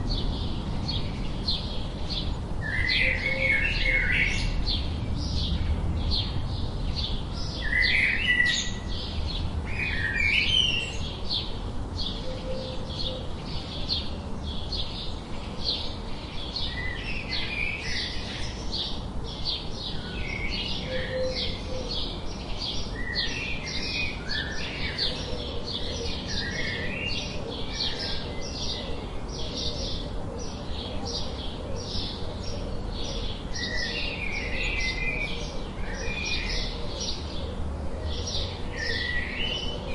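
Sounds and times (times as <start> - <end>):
chorus of high bird chirps: 0.0 - 39.9.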